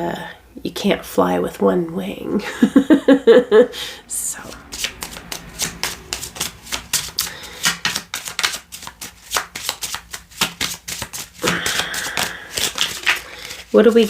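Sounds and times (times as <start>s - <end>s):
cards being shuffled: 4.4s - 14.0s.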